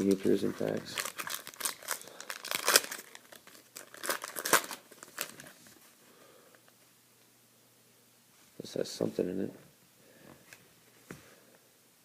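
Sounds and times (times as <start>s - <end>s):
plastic wrapper crinkling and tearing: 0.0s - 5.6s.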